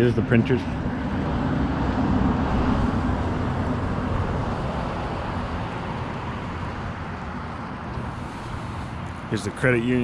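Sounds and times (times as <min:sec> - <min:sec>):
car driving past: 0:00.6 - 0:06.9.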